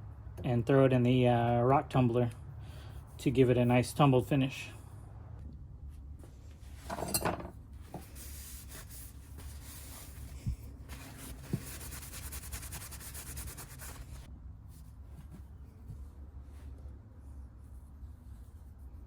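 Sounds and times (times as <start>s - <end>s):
wiping a steel knife blade: 8.0s - 14.3s.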